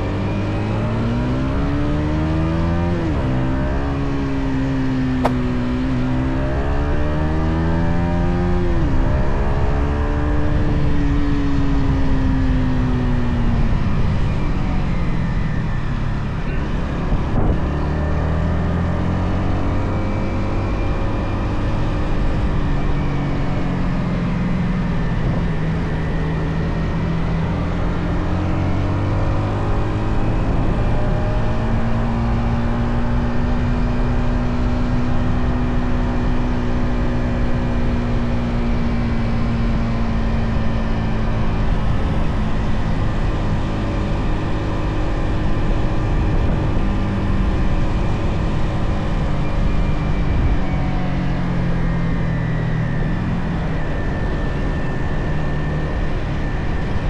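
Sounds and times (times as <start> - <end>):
motorcycle engine revving: 5.0 - 9.0.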